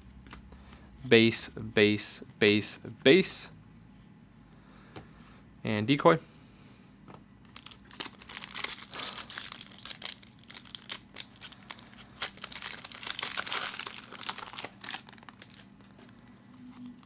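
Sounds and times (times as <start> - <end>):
foil wrapper tearing and crinkling: 7.5 - 16.0.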